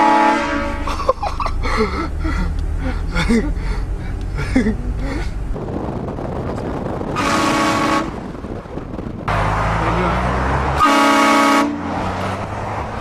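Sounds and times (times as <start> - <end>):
train horn blasts: 0.0 - 0.9, 7.2 - 8.2, 10.8 - 11.9
low rumble: 0.7 - 10.7.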